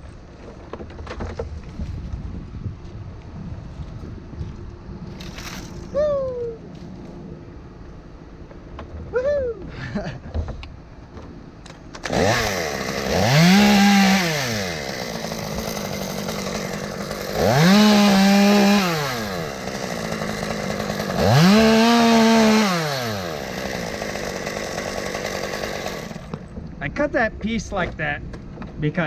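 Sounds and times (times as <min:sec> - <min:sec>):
chainsaw revving: 0:12.0 - 0:26.5.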